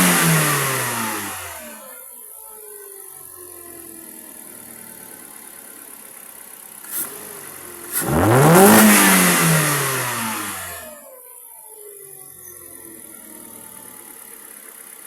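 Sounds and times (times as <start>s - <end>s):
car engine revving: 0.0s - 1.9s, 6.9s - 11.0s.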